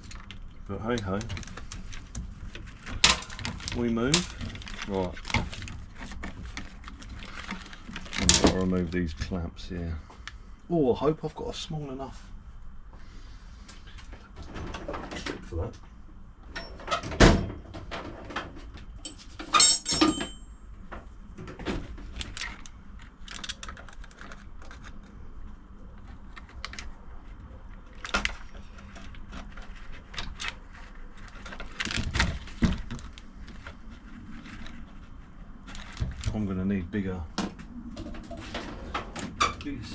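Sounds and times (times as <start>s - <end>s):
hand tools clinking on metal: 19.0s - 20.6s.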